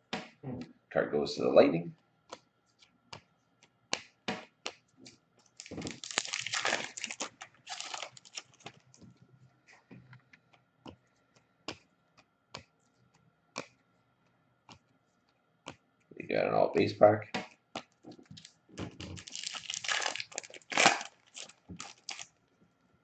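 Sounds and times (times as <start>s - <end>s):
foil wrapper crinkling and tearing: 5.5s - 9.0s, 18.2s - 22.4s.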